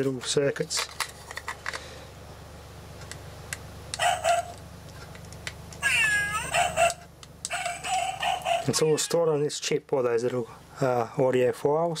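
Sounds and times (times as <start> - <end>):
toy playing animal calls: 5.8 - 9.4.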